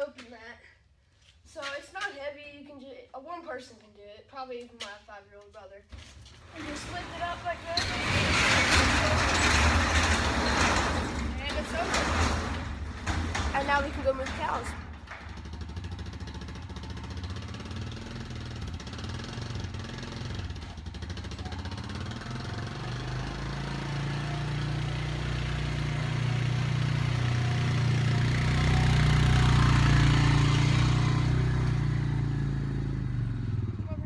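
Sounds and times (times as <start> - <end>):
atv engine running: 13.5 - 34.0.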